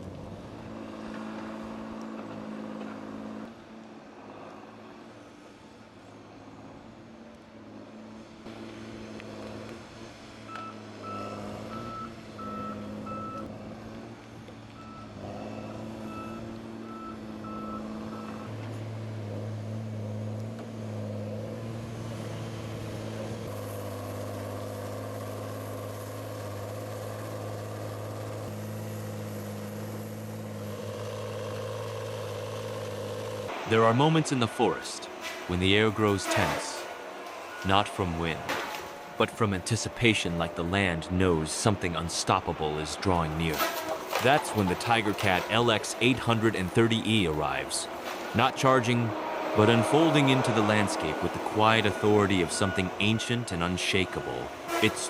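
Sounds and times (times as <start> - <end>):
diesel engine running: 0.0 - 55.0
reversing alarm beeps: 10.5 - 13.5, 14.8 - 18.5, 50.3 - 54.5.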